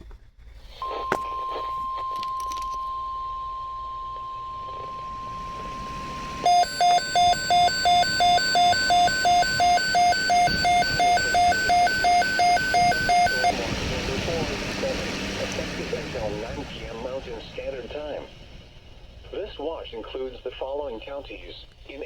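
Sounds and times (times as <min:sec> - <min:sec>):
steady warning alarm tone: 0:00.8 - 0:19.4
loud high repeating beep: 0:05.6 - 0:13.5.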